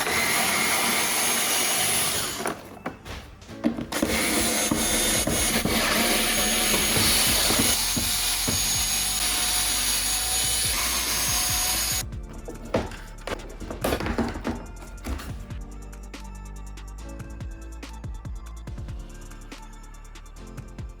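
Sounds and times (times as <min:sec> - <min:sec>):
power tool grinding: 0:00.0 - 0:02.7, 0:03.8 - 0:15.3.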